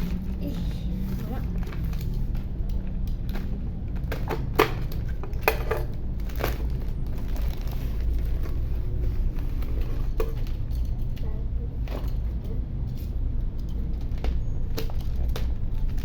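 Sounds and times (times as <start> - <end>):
low hum: 0.0 - 16.0
packaging crinkling: 6.0 - 10.1.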